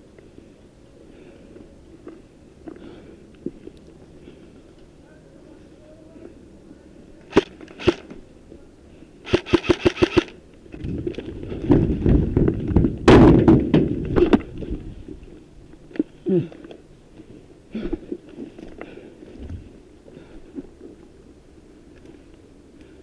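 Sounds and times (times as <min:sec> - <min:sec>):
airsoft gun shots: 0:07.3 - 0:08.2, 0:09.3 - 0:10.4.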